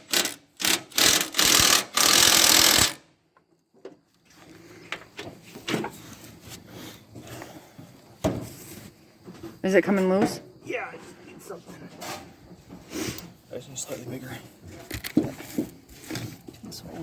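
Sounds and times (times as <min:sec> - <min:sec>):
electric drill drilling: 0:00.0 - 0:03.0.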